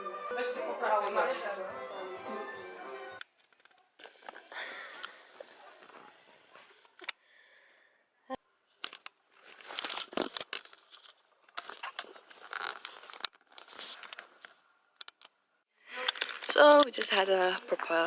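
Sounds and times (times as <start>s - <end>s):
rustling and crinkling material: 8.8s - 14.7s.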